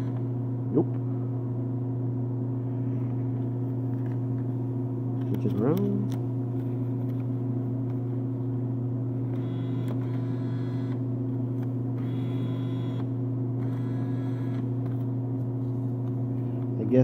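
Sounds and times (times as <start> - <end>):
bill acceptor motor whir: 0.0 - 0.4, 8.9 - 15.2
vending machine electrical hum: 0.0 - 17.0.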